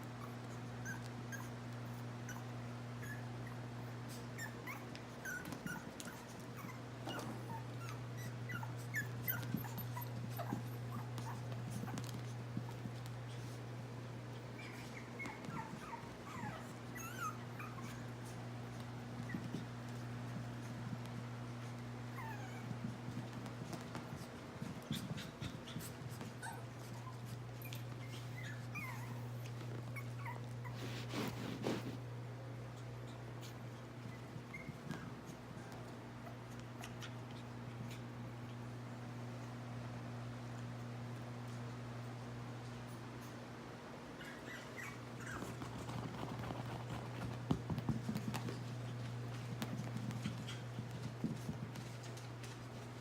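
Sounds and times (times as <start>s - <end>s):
puppies whimpering: 4.4s - 11.4s, 14.6s - 18.1s, 26.4s - 31.9s, 44.2s - 45.7s
rustling: 18.7s - 32.0s.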